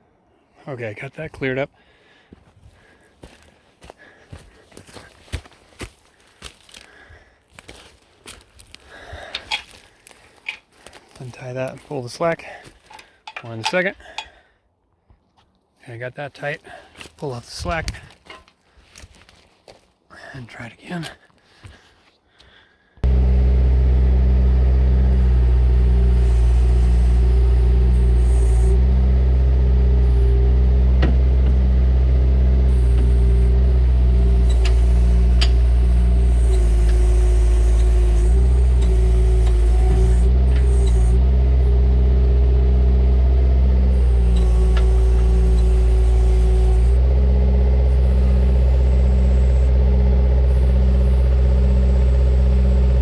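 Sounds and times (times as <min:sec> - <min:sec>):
excavator diesel engine running: 0:23.0 - 0:53.0.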